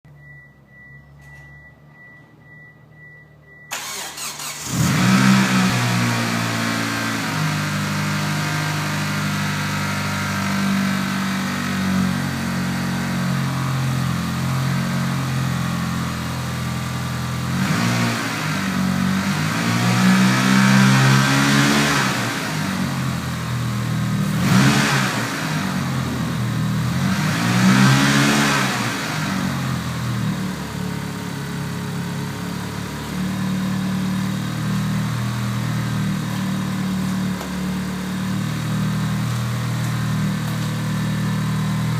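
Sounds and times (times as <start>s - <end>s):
car engine idling and revving: 0.1s - 41.9s.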